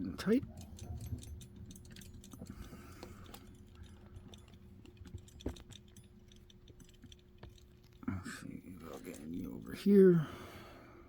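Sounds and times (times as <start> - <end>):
small metal clicks and taps: 0.2 - 8.0.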